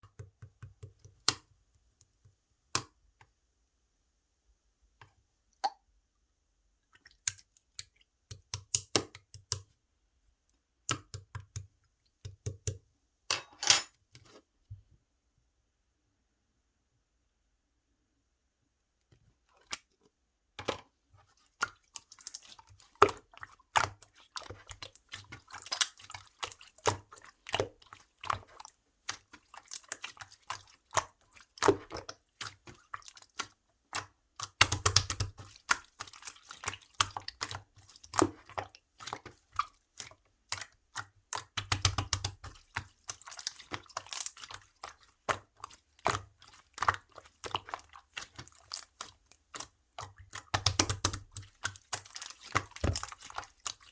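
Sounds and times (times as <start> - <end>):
slime squishing with wet clicks: 0.0 - 2.1, 7.0 - 9.7, 10.9 - 12.8, 21.2 - 53.9.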